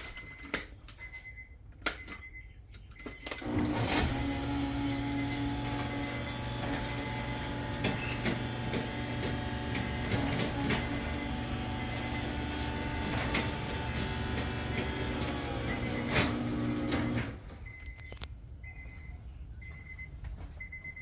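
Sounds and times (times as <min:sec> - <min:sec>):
garage door opener motor hum: 0:03.3 - 0:17.8.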